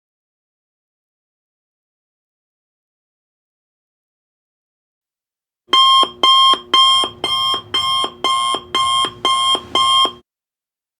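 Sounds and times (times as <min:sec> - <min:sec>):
timer alarm beeping: 0:05.7 - 0:10.2.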